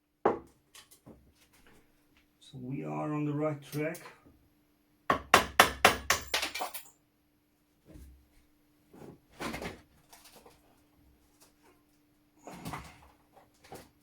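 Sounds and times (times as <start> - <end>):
sharp knocks on gun parts: 5.1 - 6.7.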